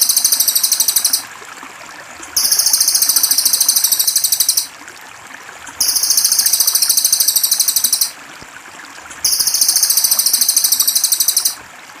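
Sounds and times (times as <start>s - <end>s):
high-pitched buzzing bird trills: 0.0s - 1.3s, 2.4s - 4.7s, 5.8s - 8.2s, 9.3s - 11.6s
trickling water: 0.0s - 12.0s.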